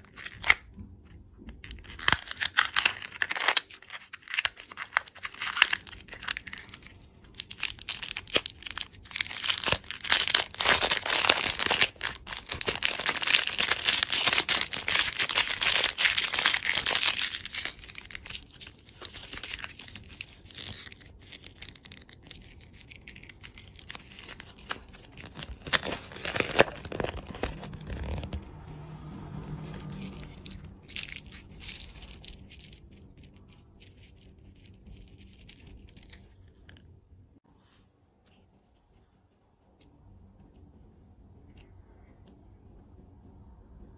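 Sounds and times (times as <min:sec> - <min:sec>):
plastic wrapper crinkling and tearing: 0:00.0 - 0:00.8, 0:01.5 - 0:28.4, 0:29.8 - 0:36.9.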